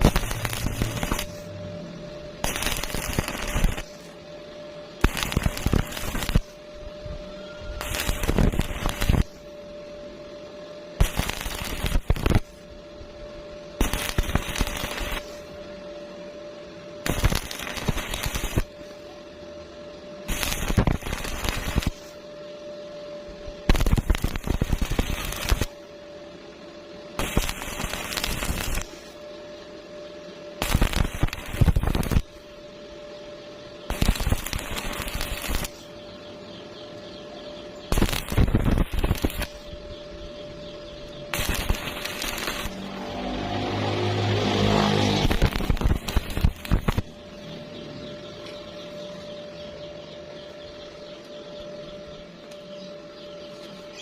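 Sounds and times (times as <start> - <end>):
welding arc crackling: 0.0 - 4.2, 5.0 - 6.9, 7.5 - 9.6, 10.9 - 12.8, 13.7 - 15.6, 17.0 - 19.0, 20.2 - 22.2, 23.6 - 25.8, 27.1 - 29.2, 30.5 - 32.6, 33.8 - 36.0, 37.8 - 39.9, 40.9 - 47.8
steady hum: 0.0 - 54.0.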